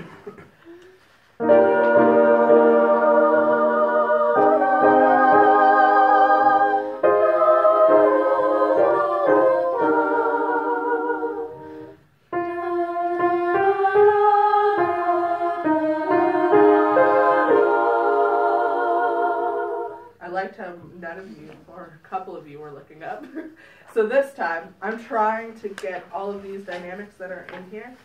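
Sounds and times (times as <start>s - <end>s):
mixed choir singing: 1.4s - 20.2s.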